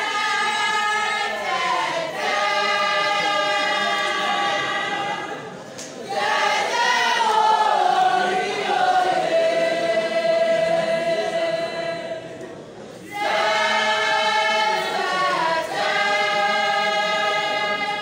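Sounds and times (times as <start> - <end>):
choir singing held notes: 0.0 - 18.0.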